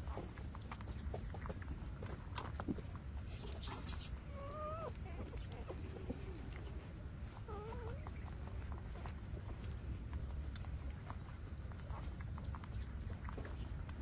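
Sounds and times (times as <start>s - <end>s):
small clicks and rustles: 0.0s - 14.0s
steady low rumble: 0.0s - 14.0s
puppies whimpering: 4.2s - 8.5s.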